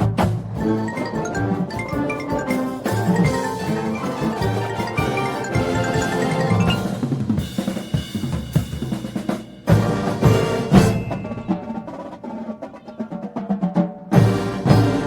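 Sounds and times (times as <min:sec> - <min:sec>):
full ensemble hit: 0:00.0 - 0:12.1, 0:14.2 - 0:15.0
mallet percussion: 0:00.0 - 0:13.0, 0:14.1 - 0:15.0
marching snare and bass drums: 0:00.0 - 0:15.0
brass playing: 0:00.7 - 0:07.2, 0:09.7 - 0:11.5, 0:14.2 - 0:15.0.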